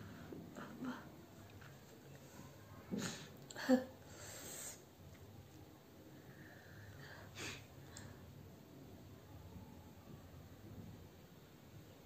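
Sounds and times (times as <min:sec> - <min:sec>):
breathy hiss of air: 0:03.0 - 0:05.0, 0:06.1 - 0:08.4.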